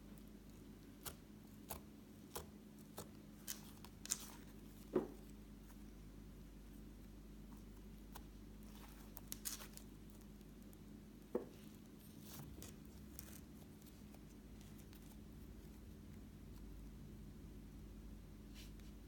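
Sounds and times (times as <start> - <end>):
slime squishing: 0.0 - 5.9, 6.7 - 16.1.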